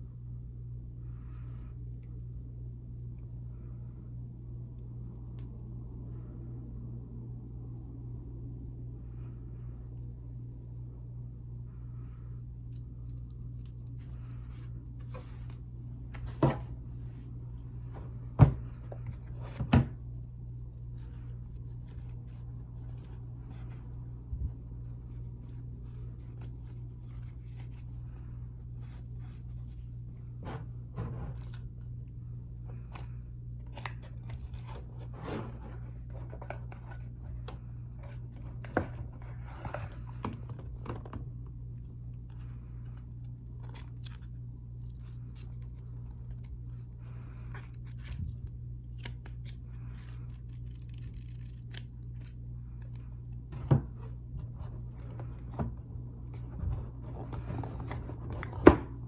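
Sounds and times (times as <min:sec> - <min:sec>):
steady low hum: 0:00.0 - 0:59.0
wristwatch packaging handled: 0:47.6 - 0:59.0.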